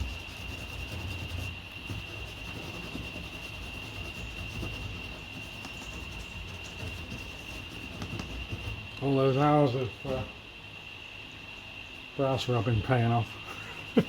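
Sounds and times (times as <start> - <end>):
pencil rubbing on paper: 0.0 - 10.3.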